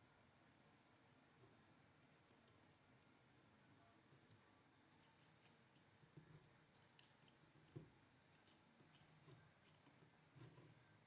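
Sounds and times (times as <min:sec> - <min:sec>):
faint clicks of small parts: 0:01.4 - 0:03.2, 0:04.1 - 0:11.0.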